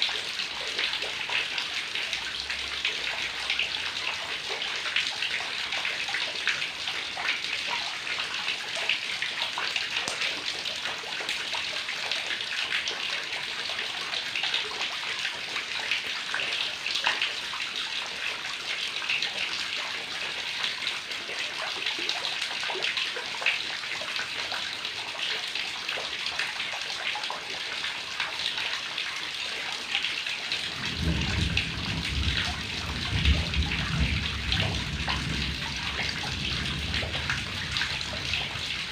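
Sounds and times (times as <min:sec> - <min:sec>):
heavy rain falling: 0:00.0 - 0:27.1, 0:27.8 - 0:38.9.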